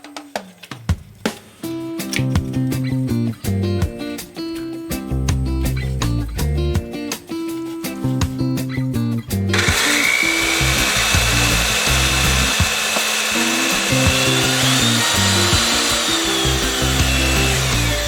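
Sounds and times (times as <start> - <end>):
background music: 1.4 - 18.0
electric power tool whining: 9.5 - 18.0.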